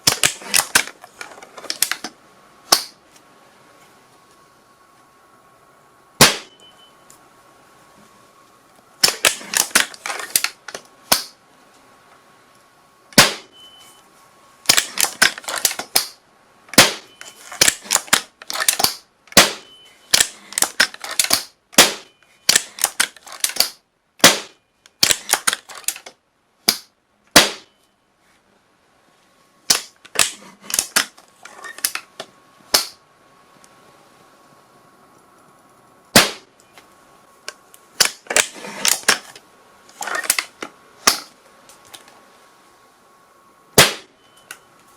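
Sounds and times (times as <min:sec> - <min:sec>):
gunshots: 0:06.2 - 0:06.6, 0:13.2 - 0:13.5, 0:16.8 - 0:18.0, 0:19.4 - 0:19.7, 0:21.4 - 0:22.1, 0:24.2 - 0:25.5, 0:27.4 - 0:27.7, 0:36.2 - 0:36.5, 0:43.8 - 0:44.1.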